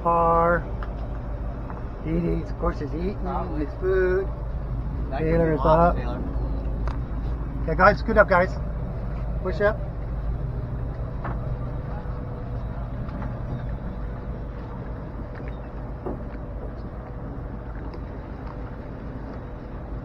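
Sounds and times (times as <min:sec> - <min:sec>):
boat engine humming: 0:00.0 - 0:20.0
faint steady whine: 0:00.0 - 0:20.0.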